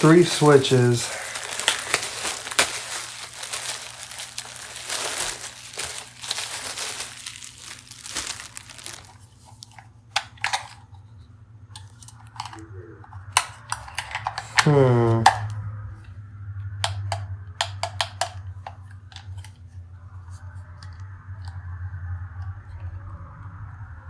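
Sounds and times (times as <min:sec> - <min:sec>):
packaging crinkling: 0:00.0 - 0:09.8.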